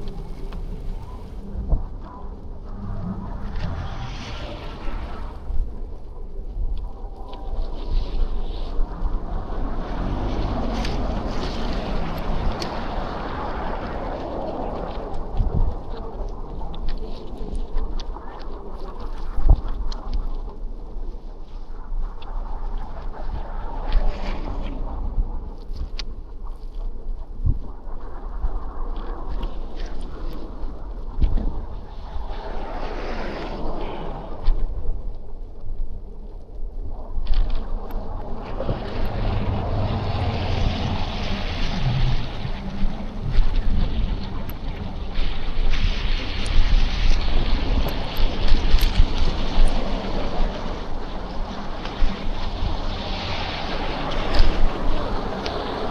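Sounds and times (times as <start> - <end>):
street noise: 0.0 - 14.8, 37.6 - 48.2
wind rumbling on microphone: 0.0 - 55.9.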